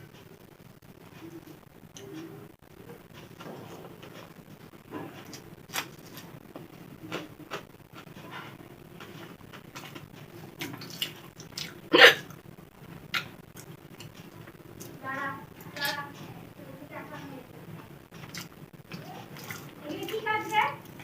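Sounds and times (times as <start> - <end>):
woman hiccuping: 11.9 - 12.3.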